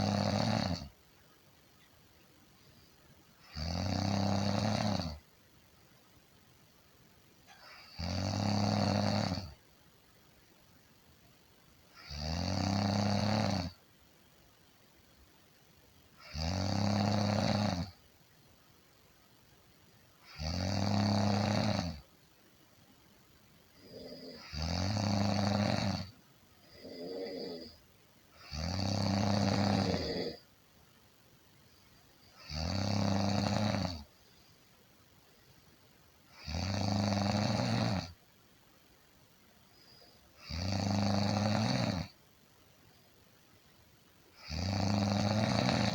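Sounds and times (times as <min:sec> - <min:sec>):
person snoring: 0:00.0 - 0:00.9, 0:03.4 - 0:05.2, 0:07.5 - 0:09.6, 0:12.0 - 0:13.8, 0:16.2 - 0:18.0, 0:20.2 - 0:22.0, 0:23.8 - 0:27.8, 0:28.4 - 0:30.4, 0:32.4 - 0:34.1, 0:36.3 - 0:38.2, 0:40.4 - 0:42.2, 0:44.4 - 0:45.9.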